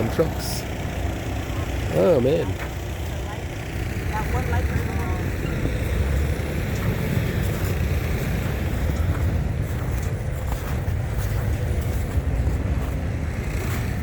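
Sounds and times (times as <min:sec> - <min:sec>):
motor vehicles rumbling: 0:00.0 - 0:14.0.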